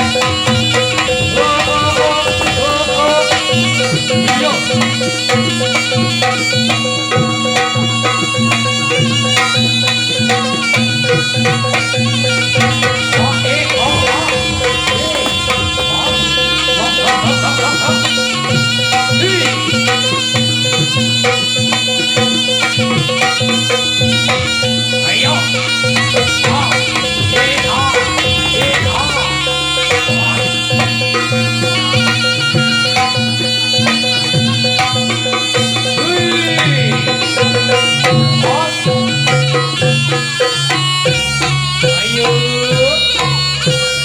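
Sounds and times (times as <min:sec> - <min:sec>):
reedy shawm melody: 0:00.0 - 0:44.0
steady held drone tones: 0:11.7 - 0:39.8.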